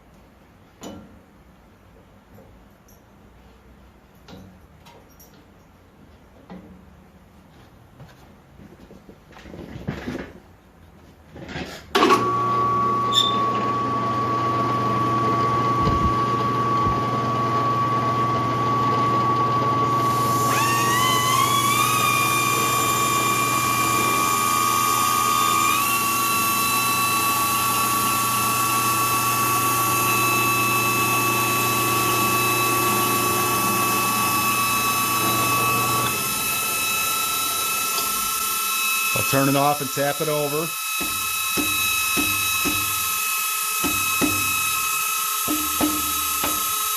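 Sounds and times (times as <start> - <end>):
drill press motor humming: 12.0 - 46.9
high grinding whine: 12.0 - 46.9.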